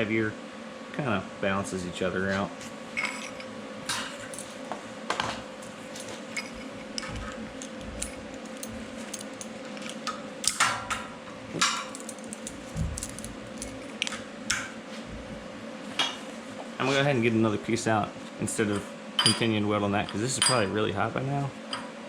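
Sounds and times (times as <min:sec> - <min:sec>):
steady hum: 0:00.0 - 0:22.0
metal clinks and knocks: 0:03.0 - 0:04.8, 0:05.6 - 0:14.6.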